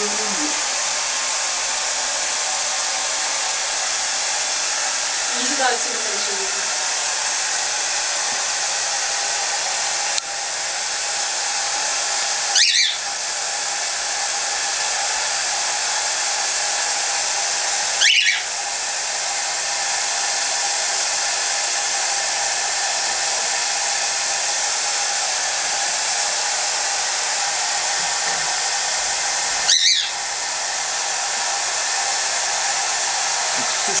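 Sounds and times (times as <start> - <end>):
hair dryer blowing: 0.0 - 34.0
bird high-pitched calls: 12.6 - 13.0, 18.0 - 18.5, 29.7 - 30.2.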